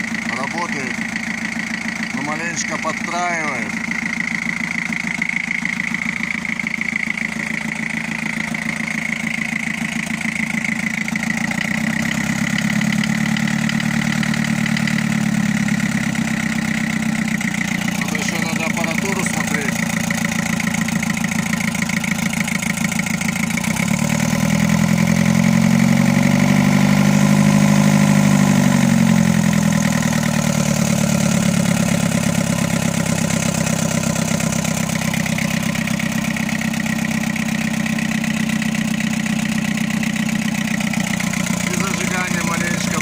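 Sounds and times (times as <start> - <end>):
engine misfiring and idling: 0.0 - 43.0.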